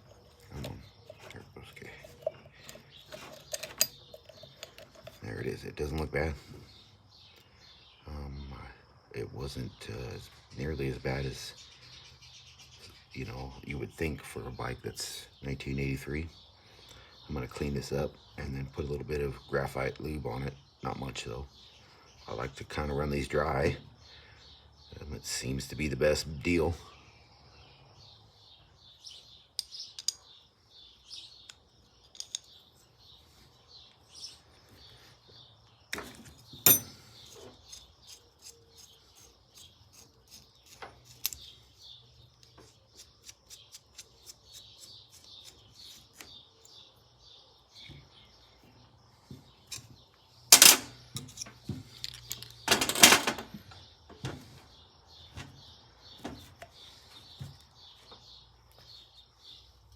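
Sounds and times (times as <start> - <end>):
birds chirping: 0.0 - 59.9
clicks and taps of small parts: 29.6 - 30.2.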